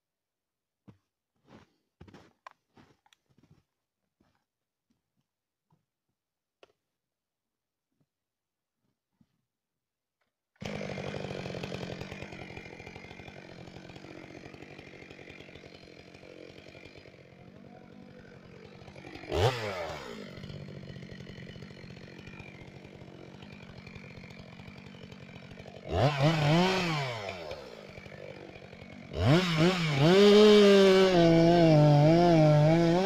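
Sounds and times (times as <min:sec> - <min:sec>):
chainsaw idling and revving: 0:10.6 - 0:33.0.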